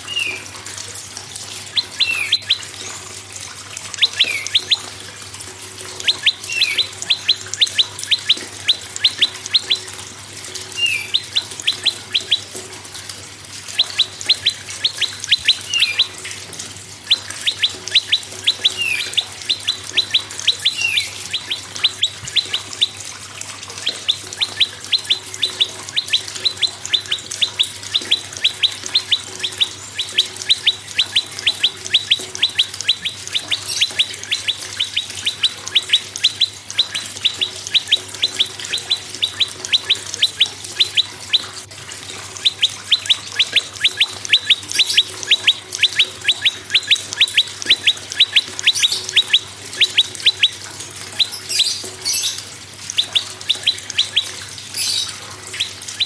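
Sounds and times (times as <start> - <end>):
bird calling in sharp chips: 1.6 - 3.1, 3.8 - 5.2, 5.9 - 12.6, 13.6 - 56.0.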